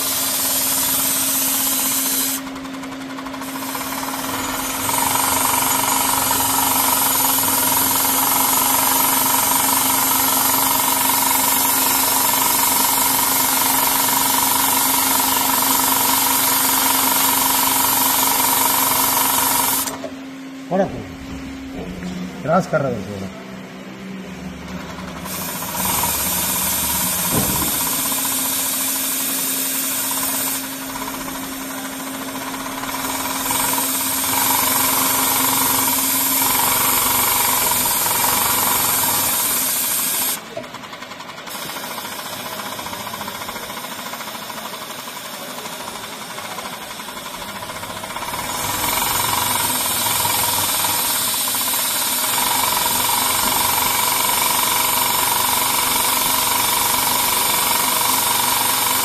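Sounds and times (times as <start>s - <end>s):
sewing machine rattling: 0.0s - 20.0s, 24.8s - 59.0s.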